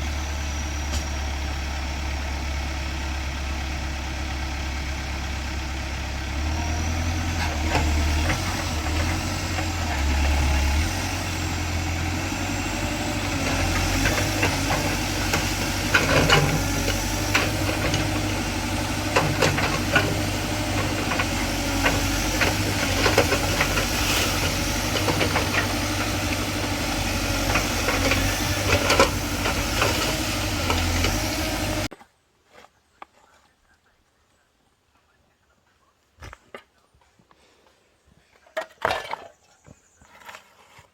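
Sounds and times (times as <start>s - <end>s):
tractor engine running: 0.0s - 31.9s.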